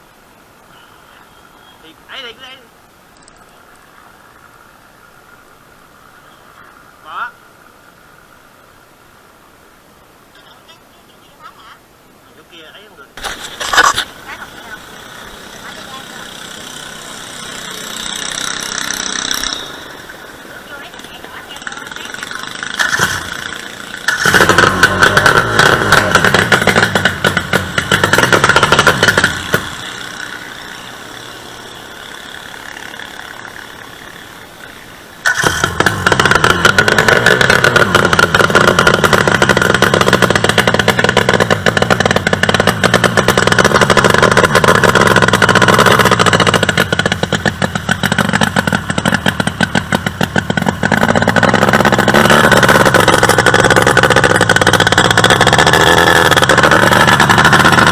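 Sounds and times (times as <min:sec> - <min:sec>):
two-stroke racing engine revving: 0:13.2 - 0:57.9.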